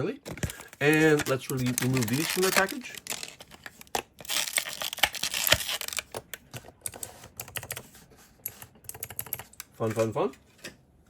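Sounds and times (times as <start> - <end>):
packaging tearing and crinkling: 0.3 - 6.2.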